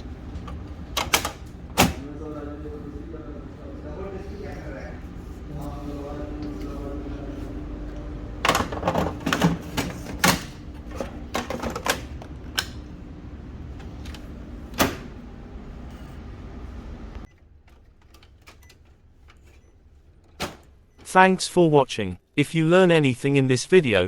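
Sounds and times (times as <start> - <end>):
steady low hum: 0.0 - 17.3.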